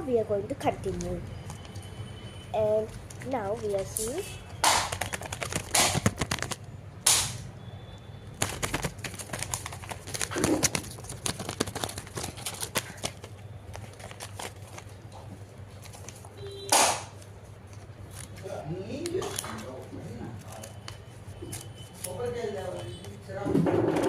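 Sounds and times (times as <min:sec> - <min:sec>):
toy packaging crinkling: 0:02.6 - 0:06.6, 0:08.4 - 0:15.1.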